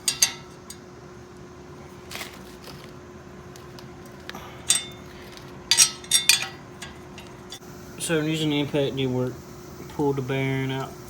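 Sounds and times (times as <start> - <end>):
metal tool noise bursts: 0.0 - 0.9, 4.6 - 8.9
shop hum: 0.0 - 11.0.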